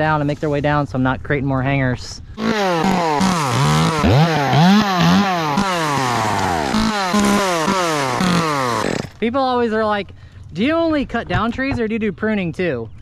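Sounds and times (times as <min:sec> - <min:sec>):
chainsaw revving: 0:02.4 - 0:09.2.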